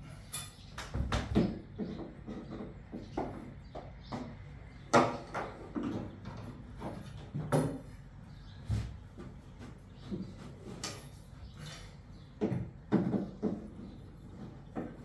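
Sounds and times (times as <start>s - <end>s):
knocks and scrapes on wood: 1.2s - 4.3s, 8.7s - 11.1s, 12.4s - 15.0s.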